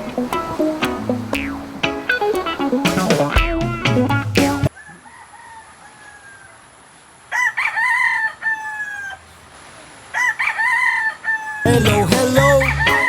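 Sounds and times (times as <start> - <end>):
rooster crowing: 4.7 - 6.7, 7.3 - 9.2, 10.1 - 13.0.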